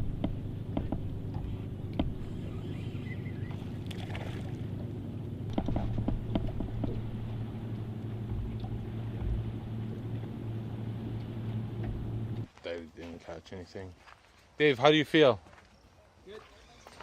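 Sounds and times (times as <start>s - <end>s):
boat motor humming: 0.0s - 12.5s
short knocks: 0.1s - 2.3s, 5.5s - 7.3s.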